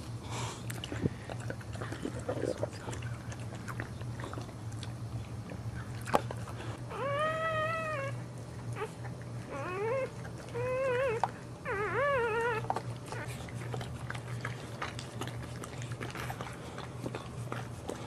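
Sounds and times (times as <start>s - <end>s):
dog whining: 6.7s - 14.2s.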